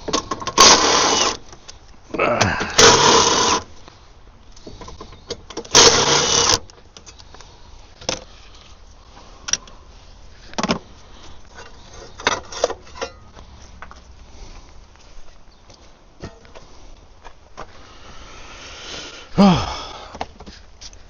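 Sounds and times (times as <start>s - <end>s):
power tool spinning out bolt: 0.5s - 1.4s, 2.8s - 3.7s, 5.7s - 6.6s.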